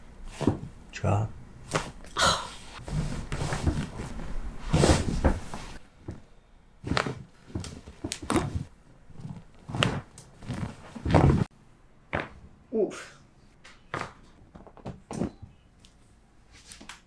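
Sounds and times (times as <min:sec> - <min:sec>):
rustling and handling noise: 0:01.6 - 0:11.5.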